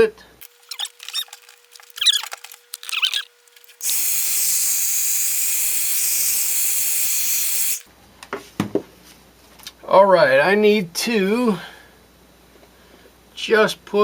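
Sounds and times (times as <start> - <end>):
faint handling sounds: 0.4 - 3.8
hot-air dryer blowing: 3.8 - 7.9.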